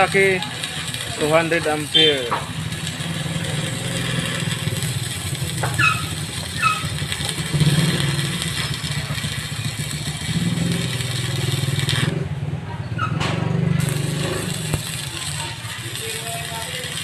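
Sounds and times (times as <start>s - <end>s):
welding generator engine running: 0.0s - 17.0s.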